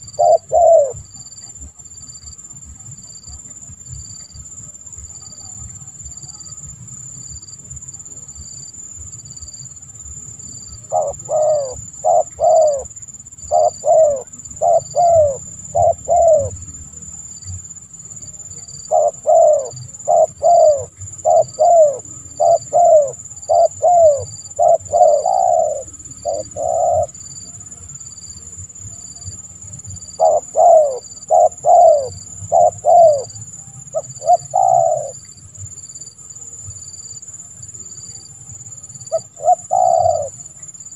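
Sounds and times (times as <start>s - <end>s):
dove cooing: 0.0s - 3.4s, 10.5s - 27.8s, 28.8s - 35.3s, 38.8s - 40.9s
high insect trill: 0.0s - 40.9s.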